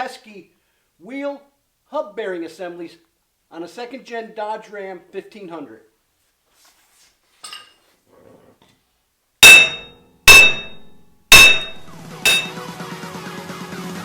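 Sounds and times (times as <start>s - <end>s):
hammer blows on metal: 9.4s - 12.6s.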